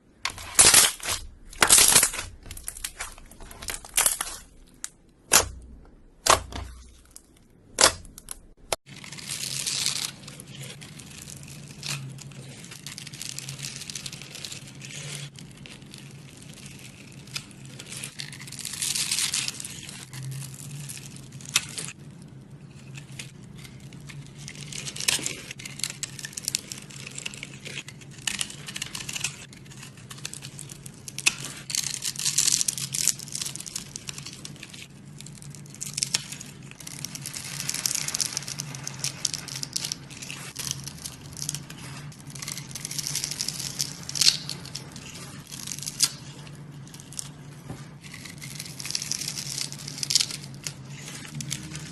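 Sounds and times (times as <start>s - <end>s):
low steady hum: 0.0s - 14.5s
fine crackling and crinkling: 0.0s - 51.9s.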